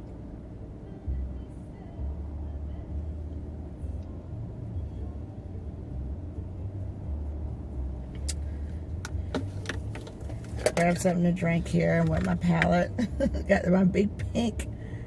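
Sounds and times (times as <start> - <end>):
vehicle cabin rumble: 0.0 - 15.0.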